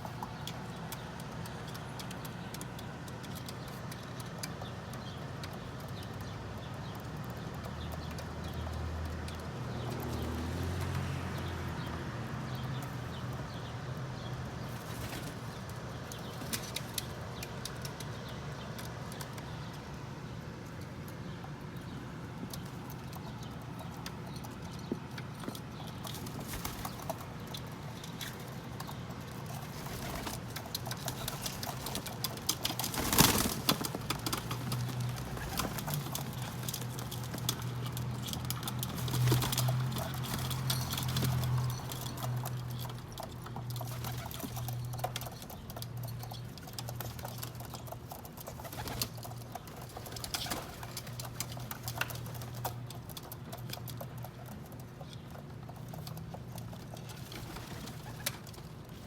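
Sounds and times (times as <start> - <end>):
pigeons pecking at seeds: 0.0 - 59.0
pigeons cooing: 25.7 - 53.1.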